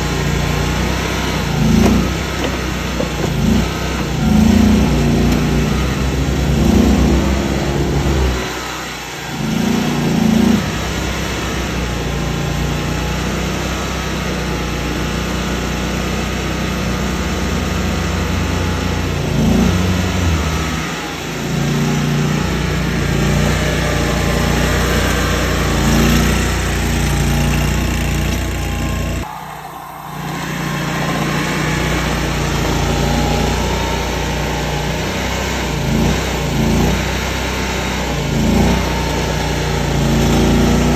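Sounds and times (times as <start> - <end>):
skid steer engine running: 0.0 - 40.9
high whine: 28.6 - 40.9.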